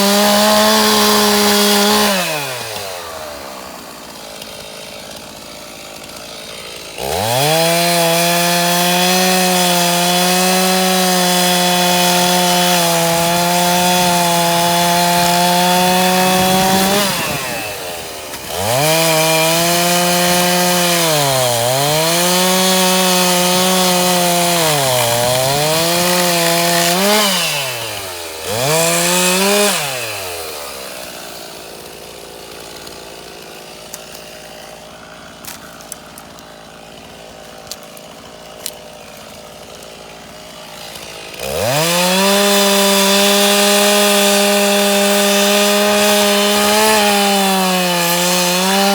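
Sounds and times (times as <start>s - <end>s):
chainsaw cutting wood: 0.0s - 48.9s.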